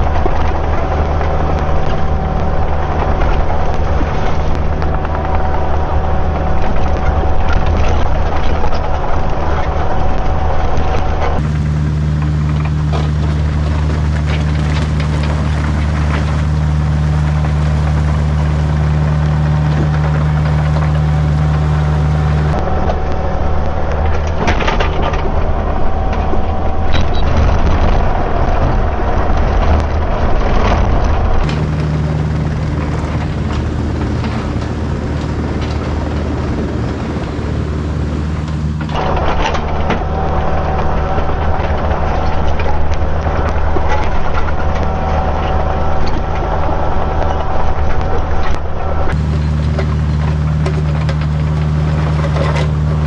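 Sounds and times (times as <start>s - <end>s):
diesel engine running: 0.0s - 53.0s
knocks and scrapes: 0.0s - 53.0s.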